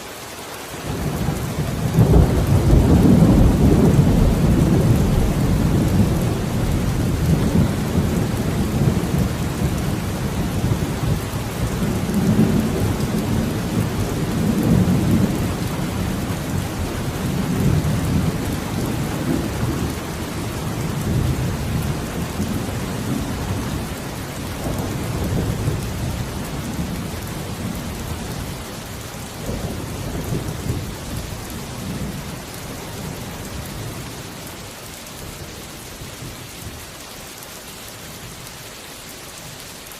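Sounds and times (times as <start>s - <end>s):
steady rain falling: 0.0s - 39.9s
rolling thunder rumble: 1.0s - 28.6s.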